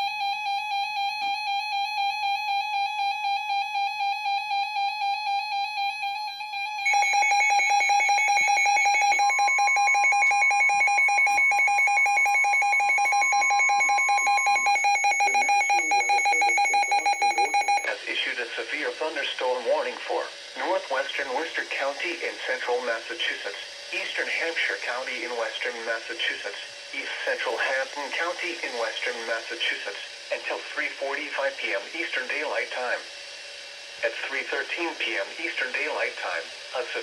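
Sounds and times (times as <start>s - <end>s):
warbling alarm tone: 0.0s - 17.9s
rapidly pulsing alarm: 0.0s - 37.0s
steady single tone: 6.8s - 17.9s.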